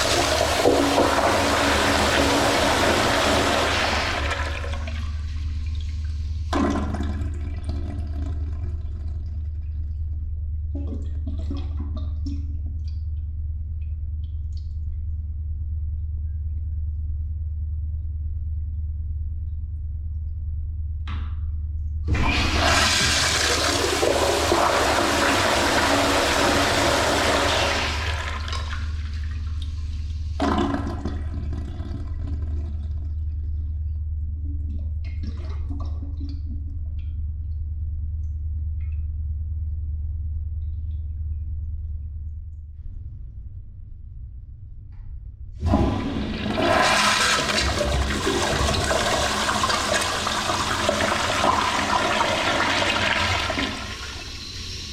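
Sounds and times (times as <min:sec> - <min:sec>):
toilet flushing: 0:00.0 - 0:09.6, 0:22.1 - 0:33.2, 0:45.6 - 0:54.9
steady low hum: 0:00.0 - 0:54.9.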